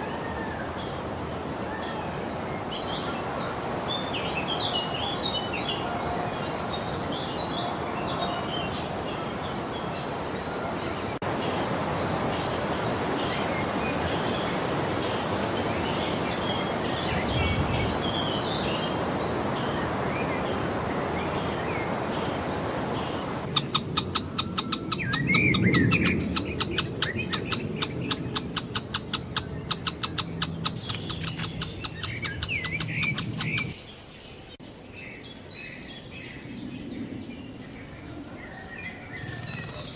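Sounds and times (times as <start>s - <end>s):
small birds chirping: 0.0s - 39.9s
steady background hiss: 0.0s - 39.9s
fast even clicking: 26.4s - 33.8s.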